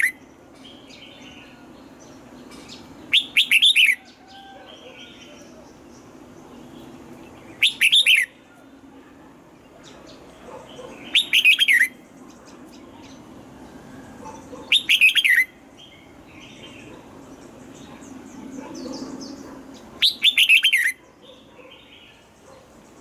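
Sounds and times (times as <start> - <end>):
bird singing whistled notes: 3.1 - 5.5, 7.5 - 8.4, 11.0 - 12.0, 14.7 - 16.8, 20.0 - 21.0.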